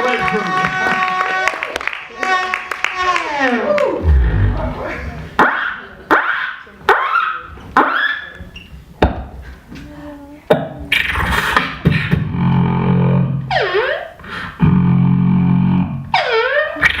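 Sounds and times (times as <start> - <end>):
vocal swoop dropping in pitch: 3.8 - 5.4
low buzzing vocal bass: 3.9 - 5.4
beatboxing: 10.9 - 12.8.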